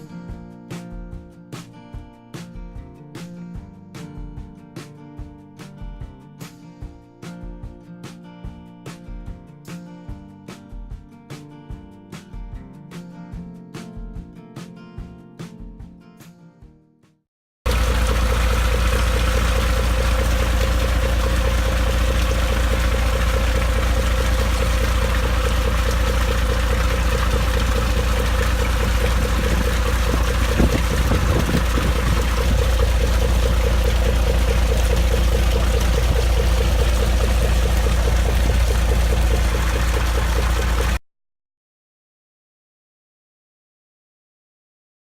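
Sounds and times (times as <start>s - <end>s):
boat engine running: 17.7s - 41.0s.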